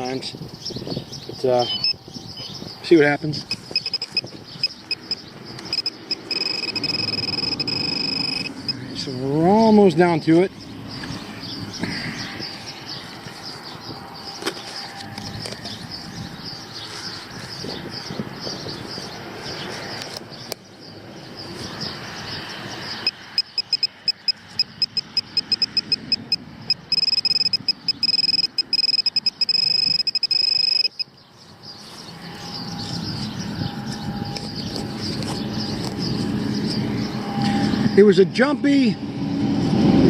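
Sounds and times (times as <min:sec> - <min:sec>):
metal detector beeping: 0:01.6 - 0:02.0, 0:03.4 - 0:08.8, 0:23.0 - 0:31.1, 0:32.3 - 0:36.0
rustling and scraping in dirt: 0:11.0 - 0:17.8, 0:31.2 - 0:37.6.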